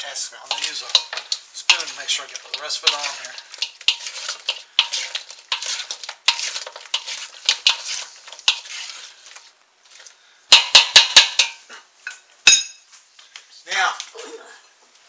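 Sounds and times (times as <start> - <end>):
spoon stirring wet sauce: 0.0 - 11.6
spoon clinking against bowl: 12.5 - 12.8.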